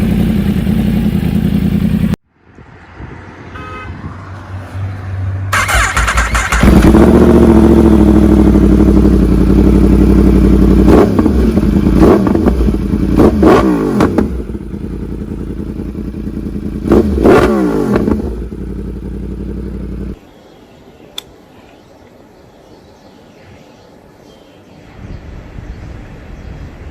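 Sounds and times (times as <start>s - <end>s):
motorcycle engine revving: 0.0s - 2.2s, 5.5s - 20.2s.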